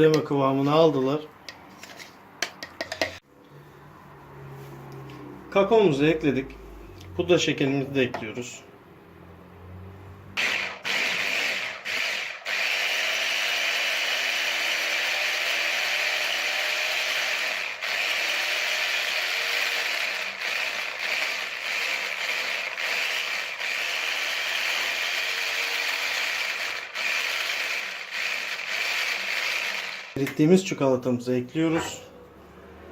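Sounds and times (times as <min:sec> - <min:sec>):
blender running: 0:10.4 - 0:30.2.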